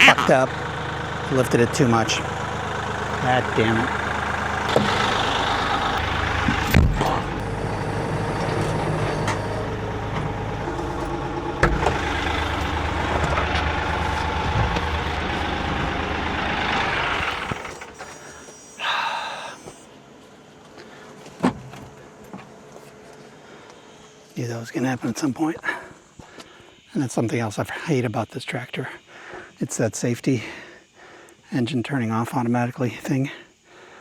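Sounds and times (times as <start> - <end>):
short buzz: 0.0 - 2.2, 10.6 - 19.9
tractor diesel engine running: 0.0 - 23.4.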